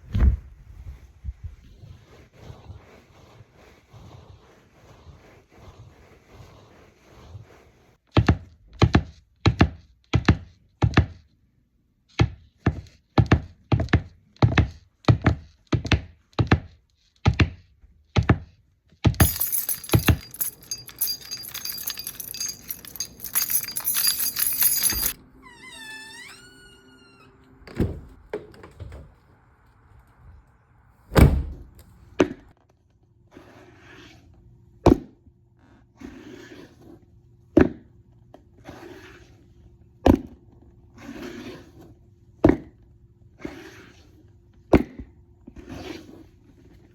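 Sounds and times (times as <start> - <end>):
heavy thuds: 19.2 - 25.2.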